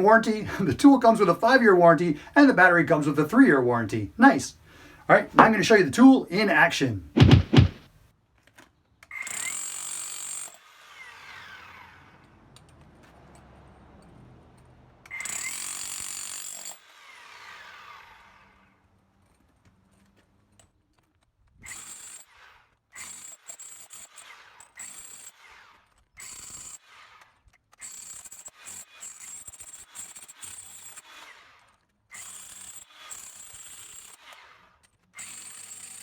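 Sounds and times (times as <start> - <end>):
rotary hammer running: 7.2 - 7.8.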